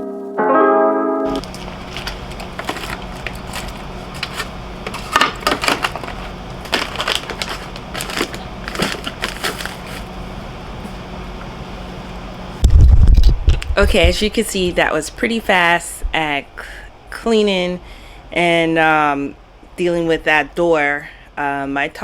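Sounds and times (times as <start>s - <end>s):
containers clattering: 1.3s - 10.1s
steady low hum: 1.3s - 22.0s.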